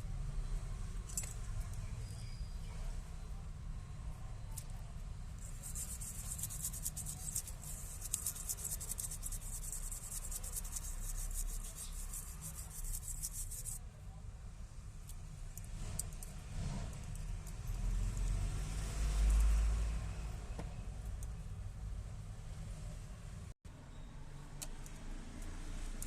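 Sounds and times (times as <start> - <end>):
fast scratchy rubbing: 5.4 - 13.8.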